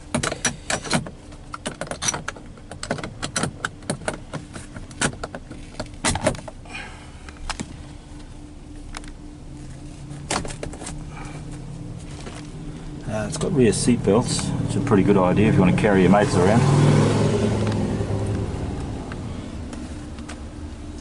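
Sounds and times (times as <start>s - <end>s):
car interior fittings clicking: 0.0s - 6.6s
faint steady hum: 0.0s - 16.4s.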